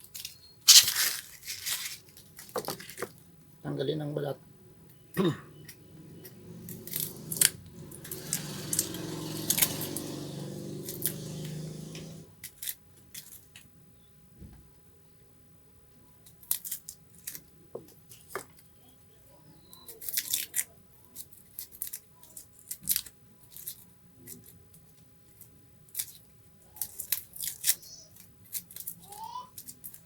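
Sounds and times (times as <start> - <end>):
garlic skin crackling: 0.0 - 3.1, 6.7 - 10.1, 16.2 - 17.5, 19.6 - 30.0.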